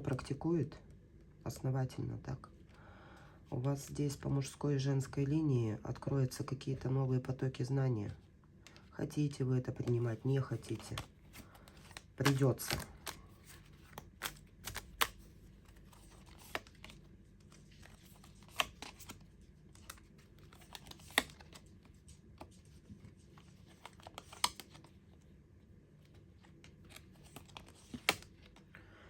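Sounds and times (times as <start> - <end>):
cards clicking and slapping on table: 13.9 - 15.2.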